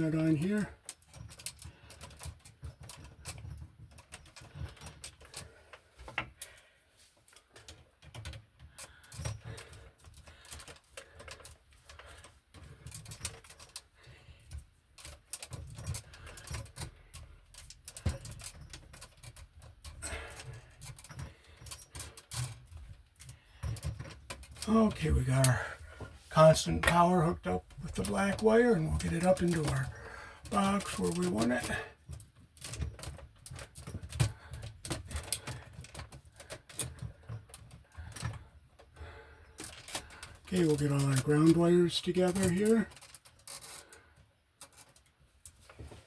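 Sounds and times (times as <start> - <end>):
wire clicks and scrapes: 0.0 - 46.0.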